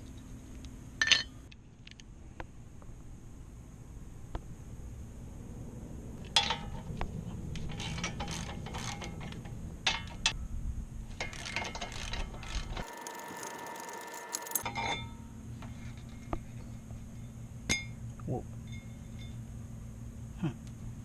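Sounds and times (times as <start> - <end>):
steady low rumble: 2.6 - 7.9
metallic clanks of hand tools: 12.8 - 15.0.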